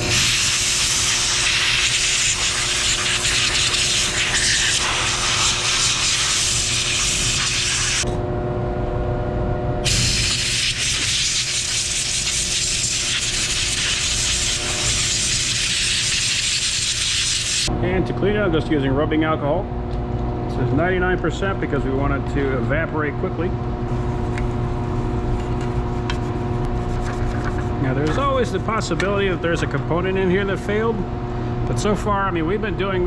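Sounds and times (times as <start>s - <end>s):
compressed air hissing: 0.0s - 8.0s, 9.8s - 17.7s
low machinery hum: 2.5s - 11.2s, 17.5s - 33.0s.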